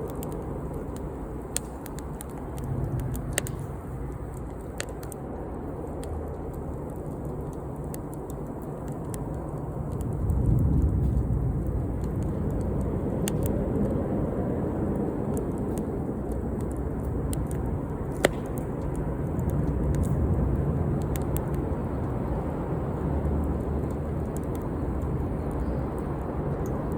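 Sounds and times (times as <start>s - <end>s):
campfire rushing noise: 0.0s - 26.9s
fire crackling: 0.0s - 26.9s
sharp fire pop: 1.0s - 5.2s, 17.3s - 20.2s.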